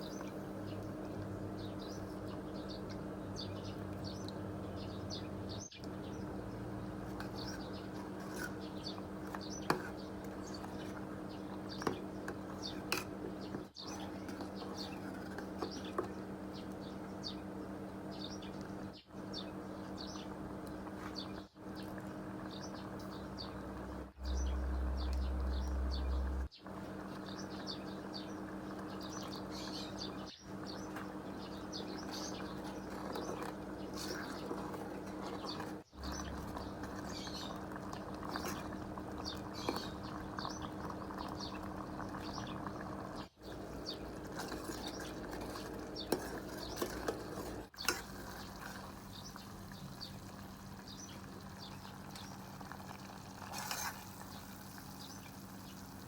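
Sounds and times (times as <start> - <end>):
small birds chirping: 0.0 - 56.0
steady background hum: 0.0 - 56.0
low rumble: 24.1 - 26.5.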